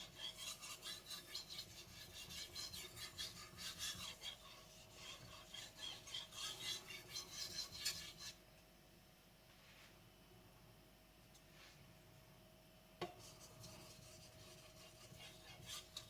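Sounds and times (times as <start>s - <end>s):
knife scraping on whetstone: 0.0s - 8.4s, 13.2s - 16.0s.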